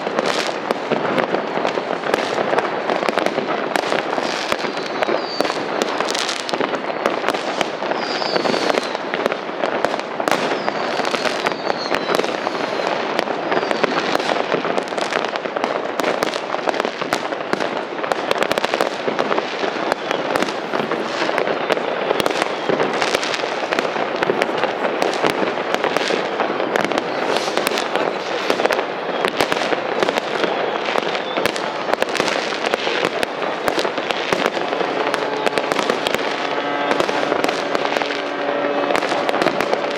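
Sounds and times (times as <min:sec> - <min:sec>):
fireworks and firecrackers banging: 0:00.0 - 0:39.9
whistles falling in pitch: 0:04.6 - 0:05.9, 0:08.0 - 0:09.0, 0:10.4 - 0:12.9.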